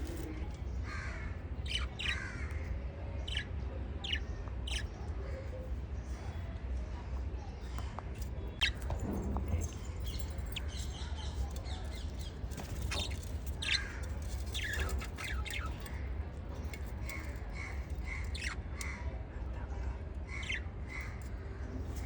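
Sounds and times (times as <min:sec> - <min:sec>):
parrots chirping and squawking: 0:00.0 - 0:02.6, 0:03.3 - 0:05.0, 0:08.6 - 0:19.1, 0:20.3 - 0:22.0.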